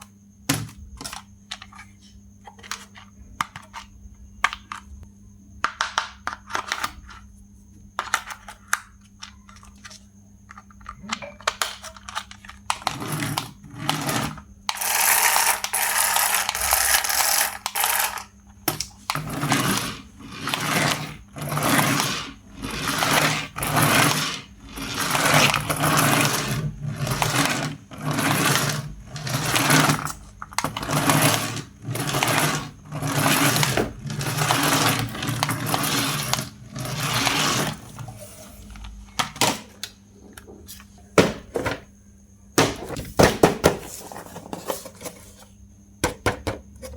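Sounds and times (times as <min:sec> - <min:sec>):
toy car electric motor whirring: 0:12.0 - 0:18.3, 0:19.1 - 0:38.8.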